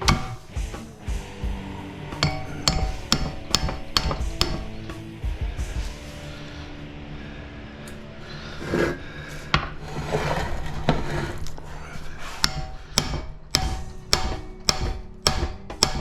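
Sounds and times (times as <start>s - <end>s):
sharp metal strikes: 0.0s - 0.8s, 2.1s - 5.1s, 12.4s - 16.0s
metal parts scraping and clinking: 8.7s - 12.1s.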